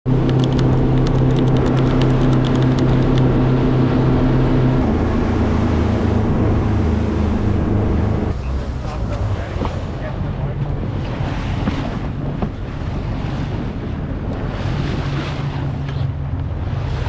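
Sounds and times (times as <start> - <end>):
boat engine running: 0.0 - 17.0
sharp ticks: 0.2 - 3.3.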